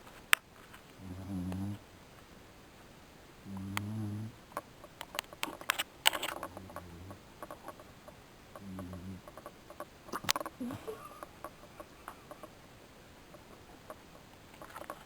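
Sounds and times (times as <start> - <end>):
dog snoring: 1.0 - 1.8, 3.4 - 4.6, 6.2 - 7.9, 8.5 - 9.5
sharp clicks and taps: 4.5 - 10.6.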